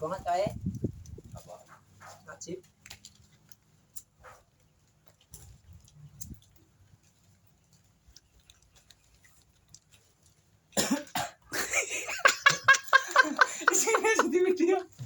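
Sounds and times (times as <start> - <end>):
person coughing hard: 10.8 - 11.7.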